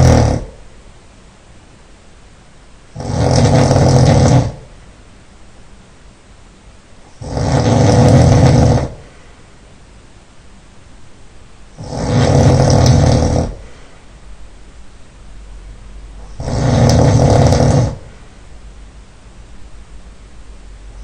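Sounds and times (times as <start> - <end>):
man snoring loudly: 0.0 - 0.6, 3.0 - 4.7, 7.1 - 9.0, 11.8 - 13.7, 16.2 - 18.1.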